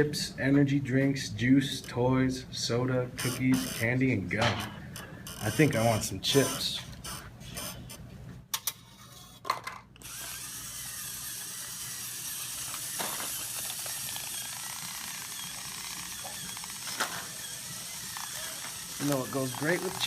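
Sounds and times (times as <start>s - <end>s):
small motor whining: 10.0s - 20.0s.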